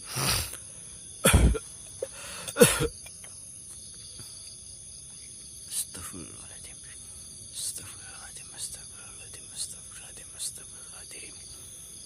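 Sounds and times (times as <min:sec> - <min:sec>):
night insects chirring: 0:00.0 - 0:12.0
loud cough-like sounds: 0:01.2 - 0:03.2.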